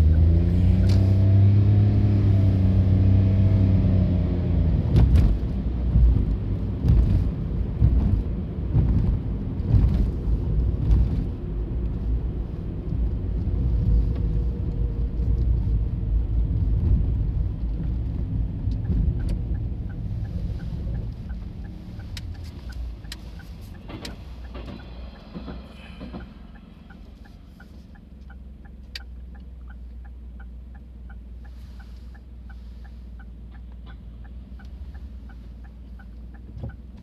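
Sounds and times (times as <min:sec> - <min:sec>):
railcar rumble: 0:04.4 - 0:28.0.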